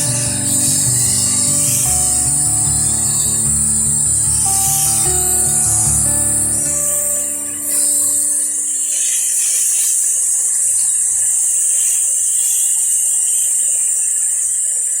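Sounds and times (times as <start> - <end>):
water jet washer hissing: 0.0 - 15.0.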